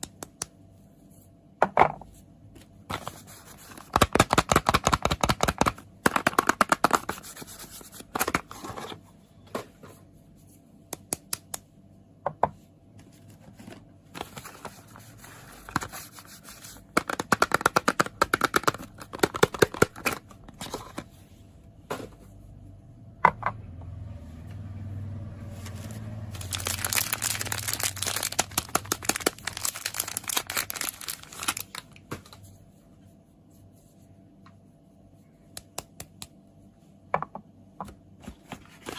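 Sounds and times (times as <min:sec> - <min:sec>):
wrapper crinkling and tearing: 0:25.6 - 0:32.0.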